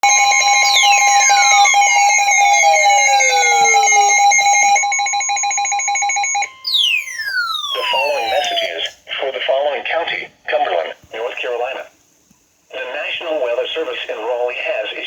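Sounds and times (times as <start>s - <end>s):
falling pitch sweeps: 0.0s - 8.7s
rapidly pulsing alarm tone: 0.0s - 8.7s
steady attention beep: 0.0s - 8.7s.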